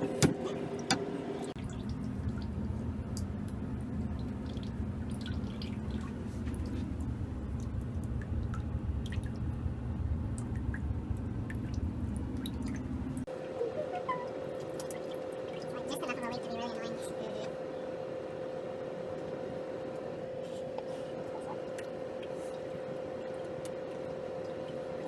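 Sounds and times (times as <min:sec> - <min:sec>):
steady low hum: 0:00.0 - 0:25.0
water dripping: 0:21.6 - 0:25.0.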